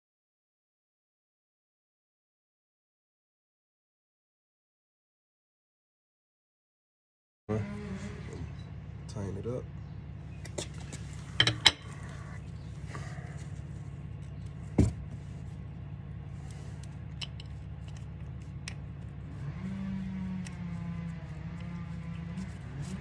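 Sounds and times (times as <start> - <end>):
low engine-like hum: 7.5 - 23.0
low pitched drone: 7.5 - 23.0
metal tools clicking and knocking: 11.4 - 12.0.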